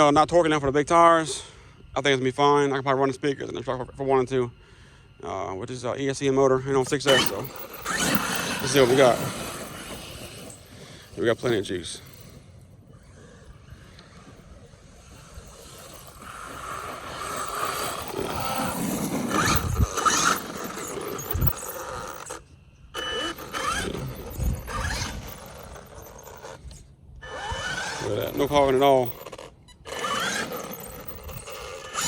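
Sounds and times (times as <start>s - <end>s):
electric motor whining: 6.6s - 32.0s
tyre and drivetrain noise: 6.8s - 32.0s.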